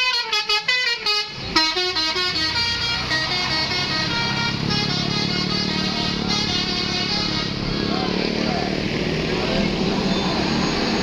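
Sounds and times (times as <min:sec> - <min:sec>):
bus air horn playing notes: 0:00.0 - 0:07.7
bus engine running: 0:00.0 - 0:11.0.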